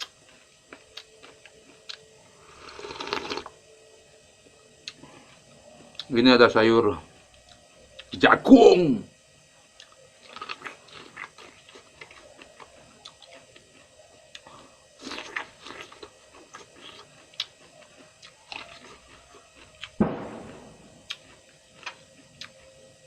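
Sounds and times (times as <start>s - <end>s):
person chewing food: 0.0s - 3.6s, 4.8s - 6.1s, 9.7s - 20.0s, 21.0s - 22.7s
loud sharp sound: 20.0s - 20.9s.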